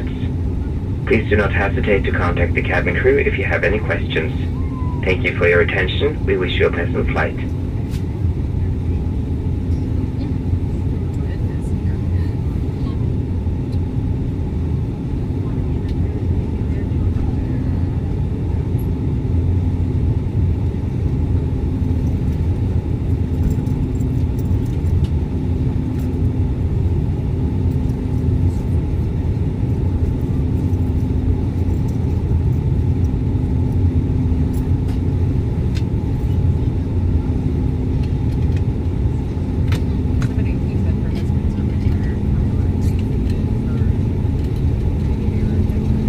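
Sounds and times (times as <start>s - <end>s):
airliner propeller drone in cabin: 0.0s - 46.0s
faint hum: 0.0s - 46.0s.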